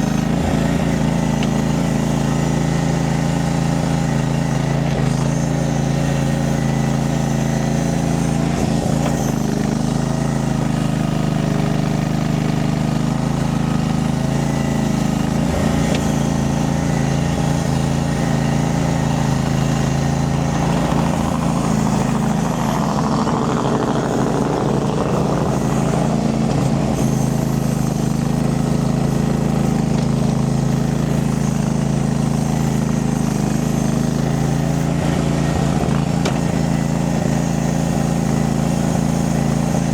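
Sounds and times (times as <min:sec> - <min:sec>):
skid steer engine running: 0:00.0 - 0:39.9
rough rushing noise: 0:19.3 - 0:27.4.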